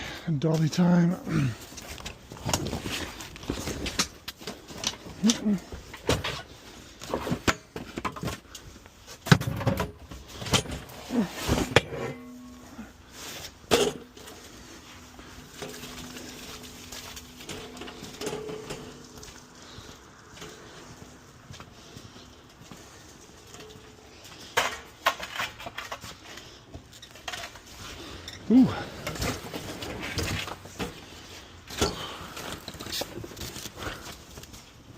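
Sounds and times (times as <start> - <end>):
person grunting: 5.2 - 5.7, 28.5 - 29.0
hand dolly knocking and clanking: 15.5 - 19.3.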